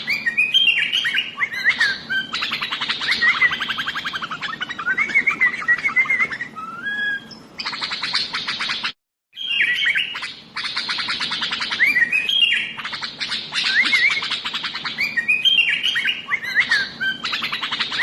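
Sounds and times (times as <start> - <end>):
bird singing chirps and whistles: 0.0 - 18.0.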